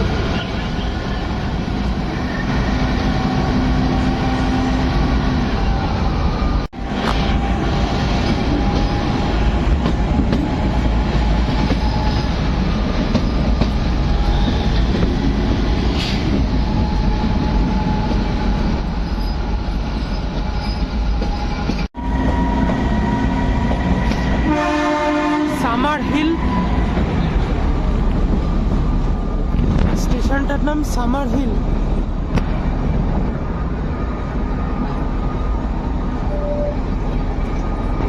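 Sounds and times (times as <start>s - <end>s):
train rumbling: 0.0s - 38.0s
locomotive horn: 24.4s - 25.9s.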